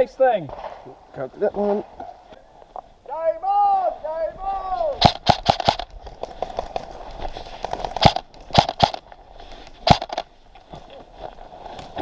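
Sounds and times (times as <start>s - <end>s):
airsoft gun shots: 5.0s - 5.9s, 8.0s - 9.0s, 9.8s - 10.3s
faint crackle of movement: 5.4s - 12.0s.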